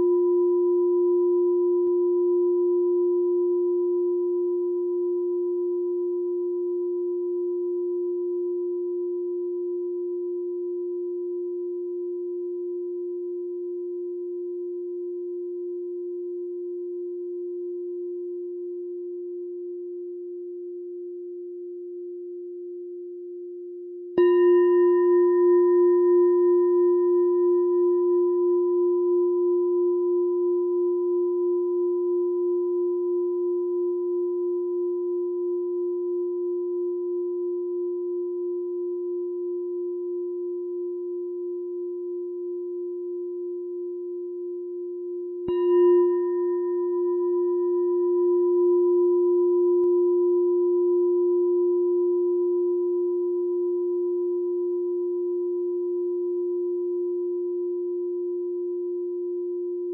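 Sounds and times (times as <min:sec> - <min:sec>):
meditation bell ringing: 0:24.2 - 0:59.9.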